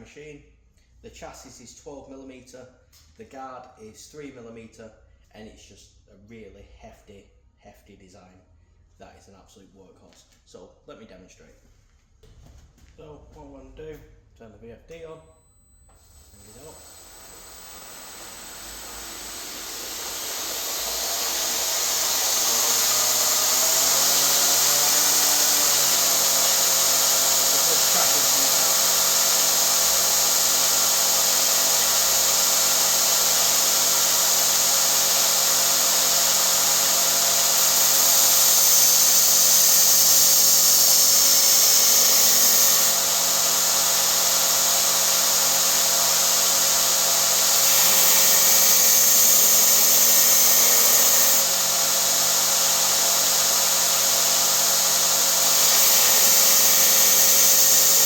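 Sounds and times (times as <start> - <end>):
belt grinder running: 15.9 - 58.0
workpiece grinding hiss: 16.1 - 43.3, 45.8 - 58.0.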